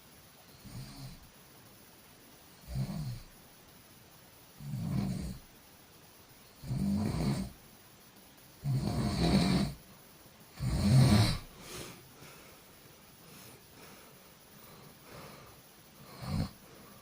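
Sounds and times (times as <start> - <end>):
person snoring heavily: 2.6 - 3.3, 4.6 - 5.4, 6.6 - 7.6, 8.6 - 9.8, 10.5 - 12.0, 15.1 - 17.0
short snort: 10.6 - 12.0, 16.0 - 16.6.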